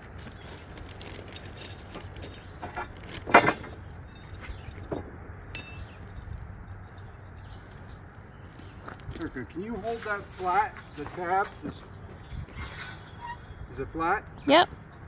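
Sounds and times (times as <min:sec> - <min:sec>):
metal pipes knocking and clinking: 0:01.6 - 0:06.3.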